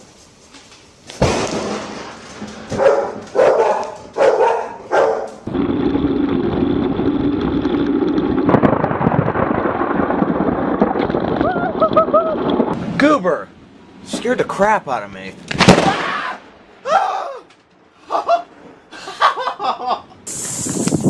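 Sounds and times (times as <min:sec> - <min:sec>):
thunder crack: 0:01.2 - 0:04.2, 0:05.4 - 0:13.0, 0:15.5 - 0:16.4
dog barking: 0:02.8 - 0:05.4.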